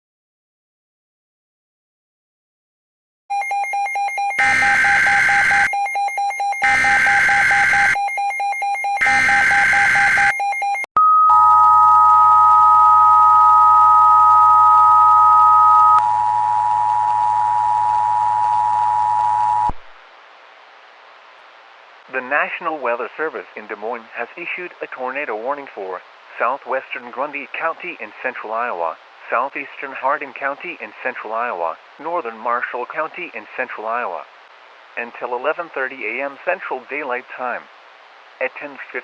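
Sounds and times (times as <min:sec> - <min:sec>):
two-tone attention signal: 0:03.3 - 0:19.7
high single tone: 0:10.6 - 0:19.8.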